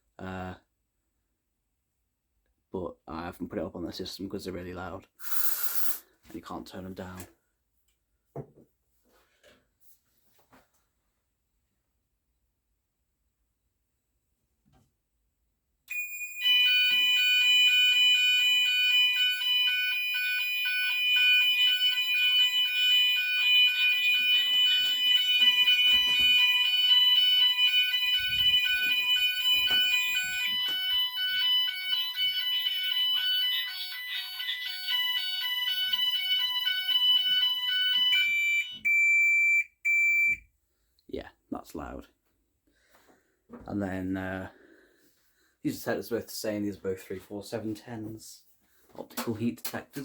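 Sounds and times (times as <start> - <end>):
alternating two-tone alarm: 15.9 - 40.4
steady high alarm tone: 15.9 - 40.4.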